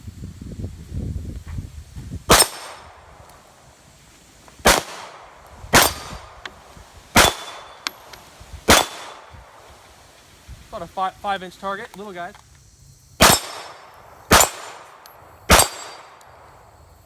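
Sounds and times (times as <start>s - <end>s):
pistol shots with ring: 2.3s - 2.9s, 4.6s - 6.4s, 7.2s - 8.1s, 8.7s - 9.3s, 13.2s - 16.3s.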